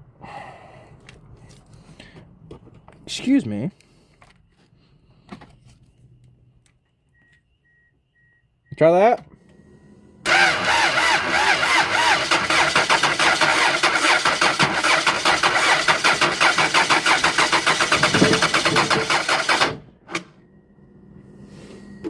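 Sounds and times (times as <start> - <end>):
car engine cranking on starter: 10.2 - 20.4.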